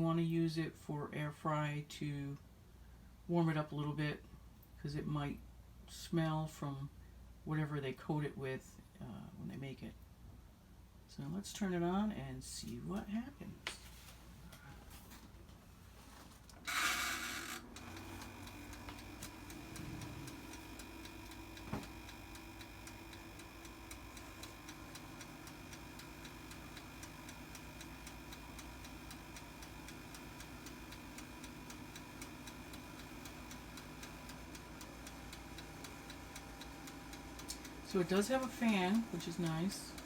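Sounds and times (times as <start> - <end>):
dial timer ticking: 16.7 - 40.0
oven fan humming: 16.7 - 40.0.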